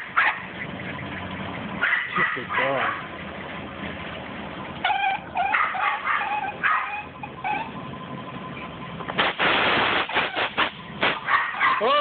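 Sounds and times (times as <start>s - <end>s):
dog yipping and whining: 1.8s - 3.0s, 4.8s - 7.8s
loud rushing noise: 9.2s - 11.3s.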